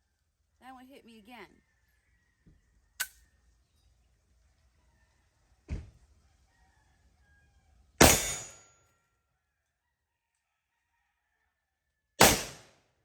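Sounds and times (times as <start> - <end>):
loud pistol gunshot: 8.0 - 8.6, 12.2 - 12.7.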